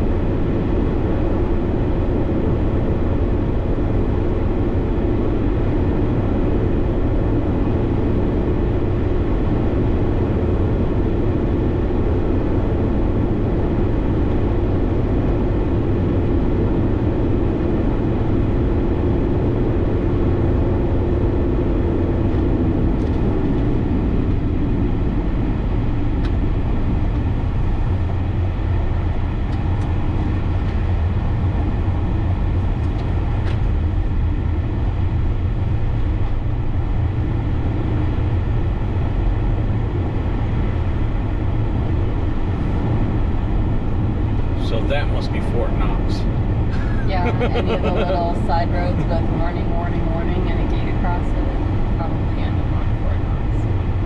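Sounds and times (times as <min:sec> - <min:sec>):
engine hum: 0:00.0 - 0:54.0.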